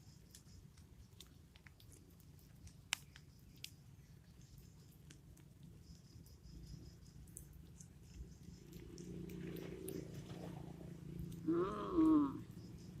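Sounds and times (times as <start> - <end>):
low animal rumble: 8.8 - 13.0
drawn-out animal call: 9.3 - 12.7.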